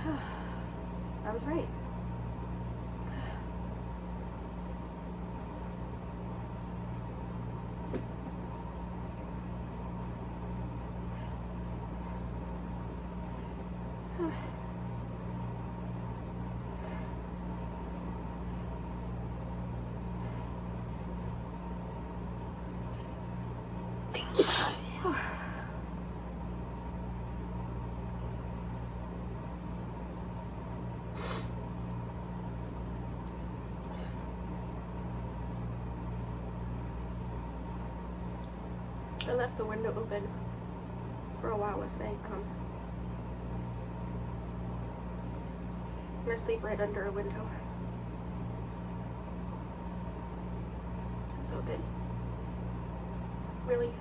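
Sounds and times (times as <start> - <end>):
steady low background hum: 0.0 - 54.0
person sneezing: 24.2 - 25.4, 31.2 - 31.5.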